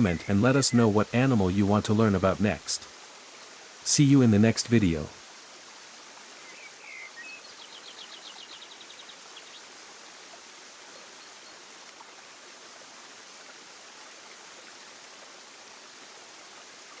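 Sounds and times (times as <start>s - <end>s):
birds chirping: 0.0s - 2.8s
flowing water rushing: 0.0s - 17.0s.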